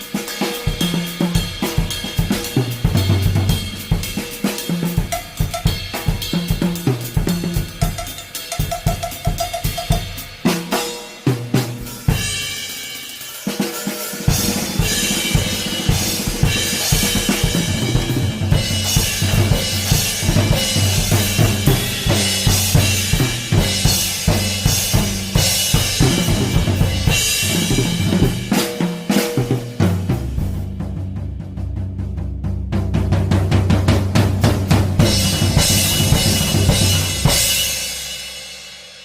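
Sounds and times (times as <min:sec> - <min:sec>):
drum kit groove: 0:00.0 - 0:39.0.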